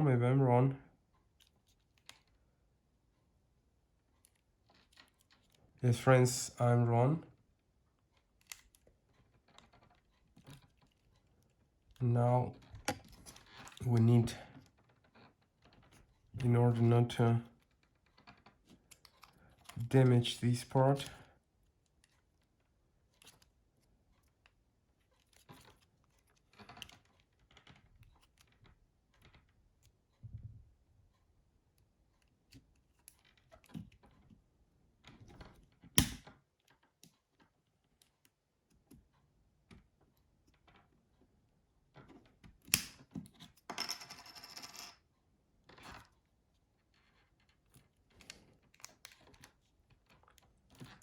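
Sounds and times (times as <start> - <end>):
plastic parts clicking and scraping: 4.1 - 5.7, 12.6 - 16.4, 17.6 - 19.9, 21.8 - 29.9, 46.8 - 51.0
sharp plastic snap: 36.0 - 36.3, 42.7 - 43.0.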